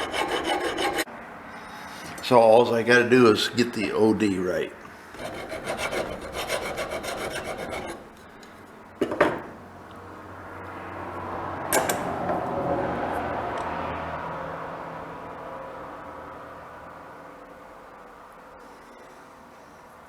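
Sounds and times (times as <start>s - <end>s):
hand file stroking metal: 0.0s - 2.2s, 5.2s - 8.2s.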